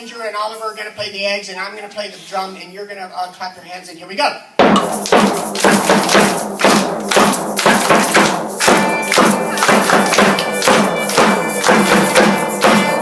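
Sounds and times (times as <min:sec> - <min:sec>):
drum beating: 0:04.6 - 0:13.0
egg shakers rattling: 0:04.8 - 0:13.0
held note: 0:08.4 - 0:13.0.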